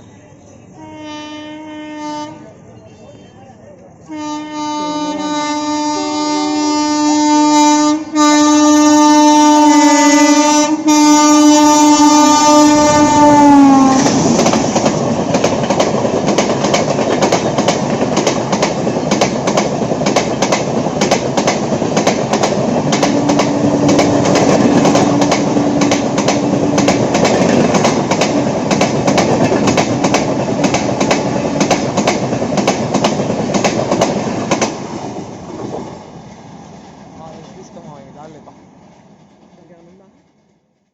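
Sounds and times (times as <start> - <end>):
locomotive horn: 0.7 - 2.6, 4.0 - 14.2
train wheels clattering on rails: 12.6 - 36.0.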